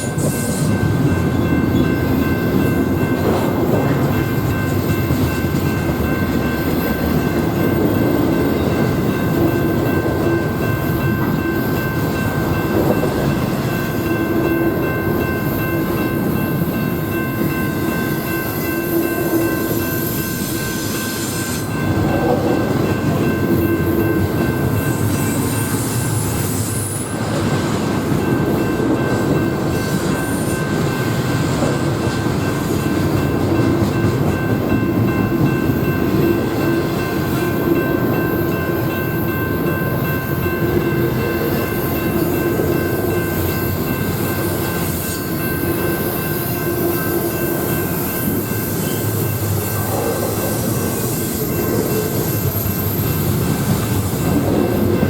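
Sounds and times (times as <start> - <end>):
high wheel squeal: 0.0 - 2.4, 18.0 - 21.8, 43.2 - 55.0
high ringing tones: 0.0 - 27.2
freight train rumbling past: 0.0 - 55.0.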